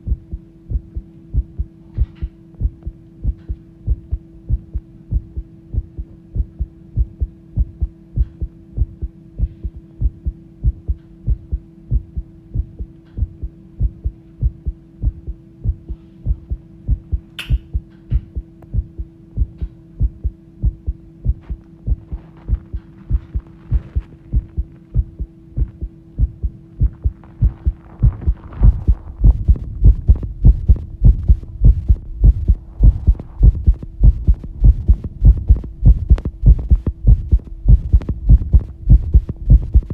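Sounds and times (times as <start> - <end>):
heart beating fast: 0.0 - 39.9
steady hum: 0.0 - 39.9
sharp click: 17.4 - 18.3
rustling: 27.1 - 39.4.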